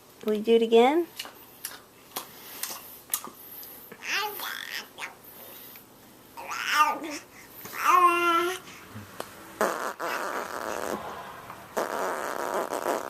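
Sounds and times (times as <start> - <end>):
child's high-pitched vocal sound: 4.0 - 5.2, 6.4 - 8.7
child blowing raspberries: 9.6 - 13.0.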